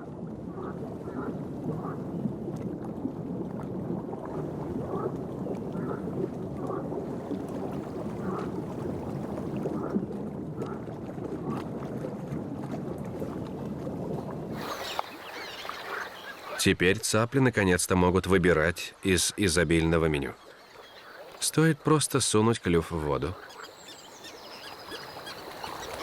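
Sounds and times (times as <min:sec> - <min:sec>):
frogs calling in chorus: 0:14.6 - 0:16.7, 0:20.4 - 0:21.5, 0:23.3 - 0:26.0.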